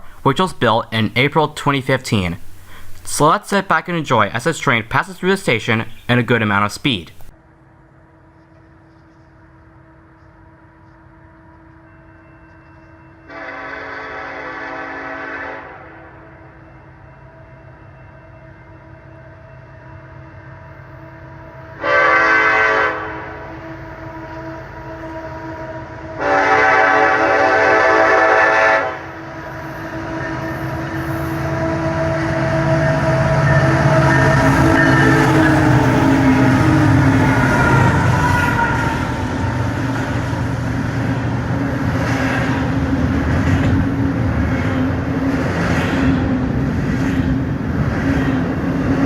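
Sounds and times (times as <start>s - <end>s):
low rumble of train: 0.0s - 0.3s, 7.1s - 49.0s
train air horn blast: 13.2s - 16.4s, 21.1s - 39.5s
locomotive engine drone and rumble: 29.0s - 45.6s.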